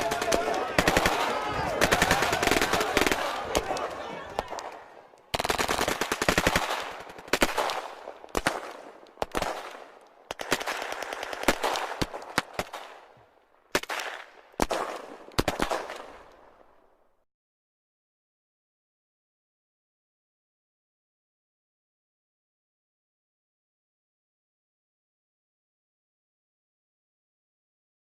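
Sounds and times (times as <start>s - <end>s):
automatic gunfire bursts: 0.0s - 4.7s, 5.3s - 12.9s.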